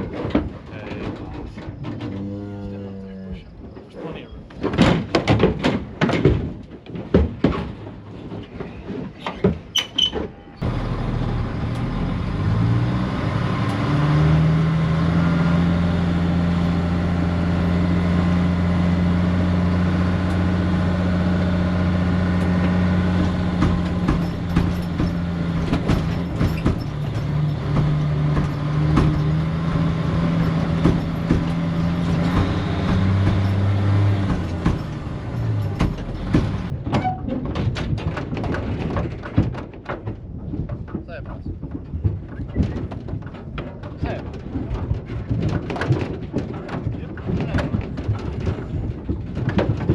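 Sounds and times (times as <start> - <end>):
sharp knocks and rattles: 0.0 - 2.3, 3.6 - 49.9
truck engine running: 10.6 - 36.8.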